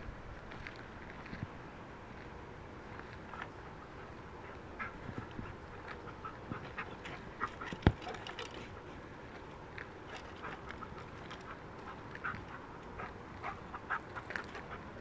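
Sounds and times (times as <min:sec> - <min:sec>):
dog panting: 0:03.3 - 0:09.0, 0:10.2 - 0:15.0.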